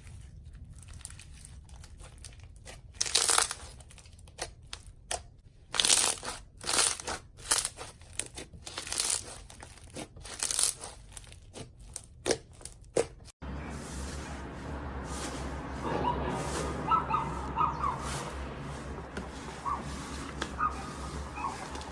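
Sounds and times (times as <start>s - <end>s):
slime squishing and popping: 0.0s - 13.2s.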